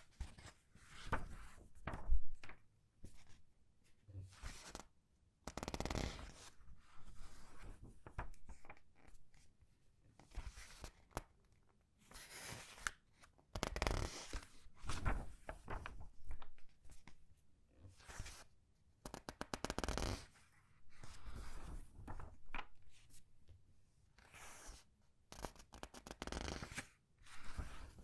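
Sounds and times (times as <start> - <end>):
paper pages rustling and crackling: 14.3 - 17.0, 21.2 - 22.8.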